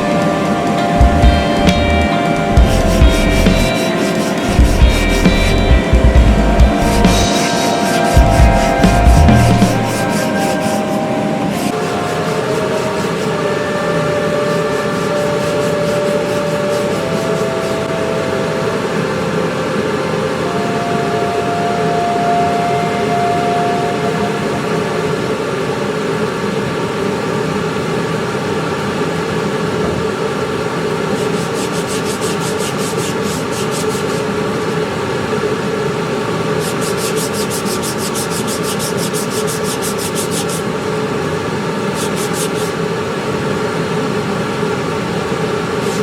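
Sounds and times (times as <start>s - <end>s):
fast high ticking: 0.0s - 13.4s
sander on wood: 0.0s - 19.8s, 31.0s - 34.4s, 36.5s - 40.8s, 42.0s - 42.8s.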